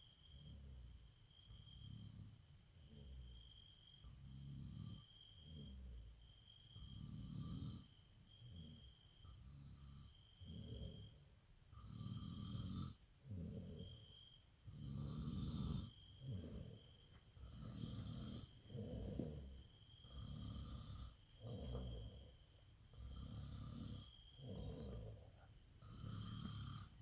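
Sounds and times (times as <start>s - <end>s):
person snoring: 17.4s - 22.3s, 23.0s - 27.0s.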